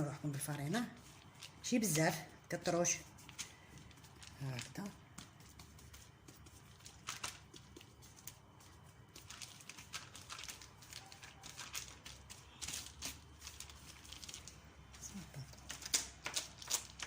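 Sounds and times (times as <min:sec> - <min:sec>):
hands patting bread dough: 0:03.1 - 0:13.8.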